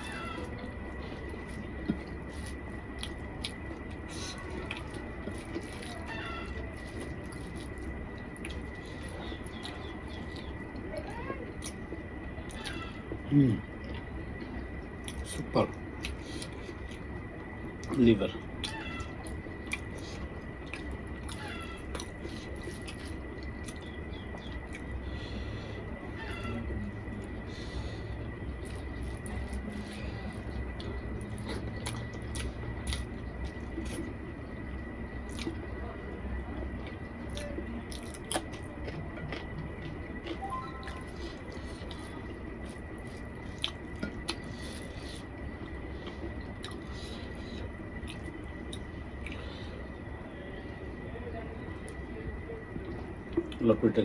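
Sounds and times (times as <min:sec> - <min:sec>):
wet chewing: 0:00.0 - 0:34.2, 0:34.8 - 0:35.8, 0:36.8 - 0:50.0
faint high whine: 0:39.6 - 0:54.0.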